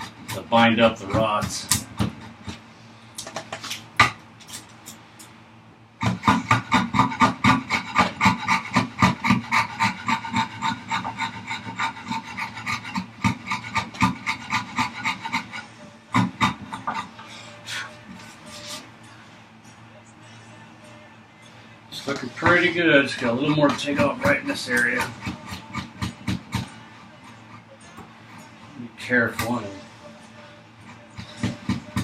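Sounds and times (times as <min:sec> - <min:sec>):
hand rasp on wood: 0:06.0 - 0:17.2, 0:22.4 - 0:26.7.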